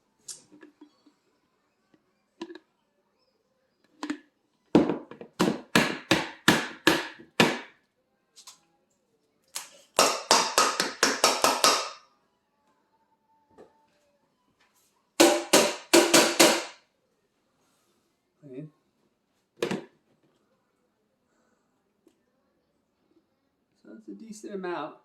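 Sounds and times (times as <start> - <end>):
sharp knocks on hard surface: 4.8 - 7.7, 10.0 - 12.0, 15.2 - 16.8.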